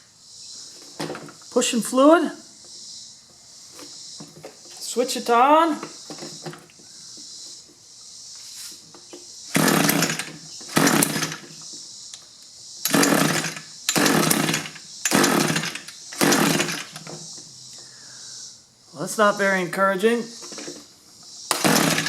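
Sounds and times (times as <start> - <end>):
hedge trimmer engine pull-start: 0.9 - 1.4, 9.5 - 11.6, 12.8 - 17.3, 20.4 - 20.9, 21.5 - 22.0.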